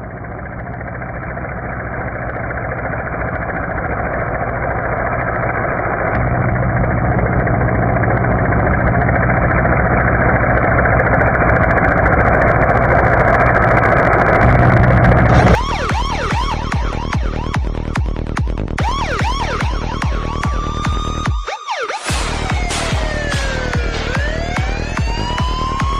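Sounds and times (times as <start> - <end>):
engine hum: 0.0 - 15.8, 22.1 - 25.9
electronic siren yelping: 15.1 - 25.9.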